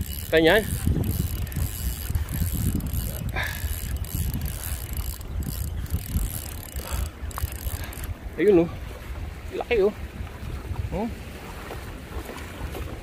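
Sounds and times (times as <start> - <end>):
fishing reel gears whirring: 0.0 - 8.5
strong wind on microphone: 0.0 - 13.0.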